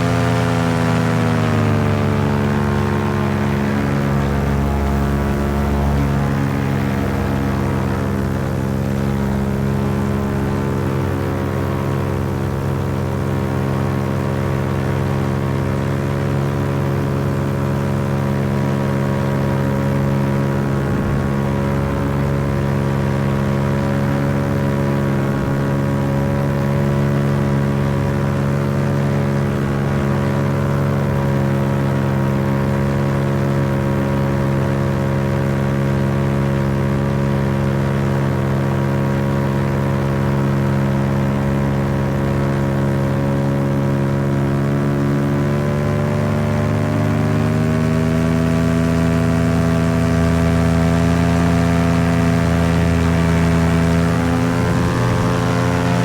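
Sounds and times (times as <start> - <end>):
paramotor engine drone: 0.0 - 56.0.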